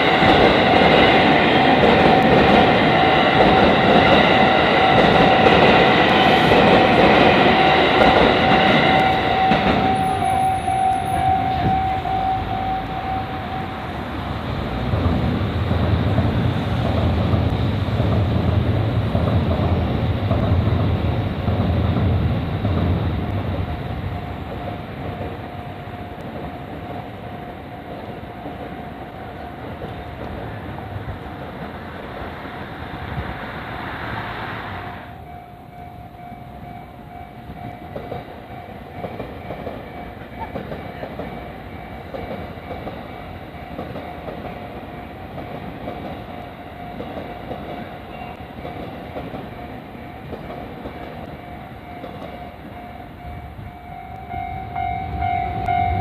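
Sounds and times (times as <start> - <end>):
train rumble and wheel clatter: 0.0 - 56.0
thin steady high tone: 7.6 - 14.2.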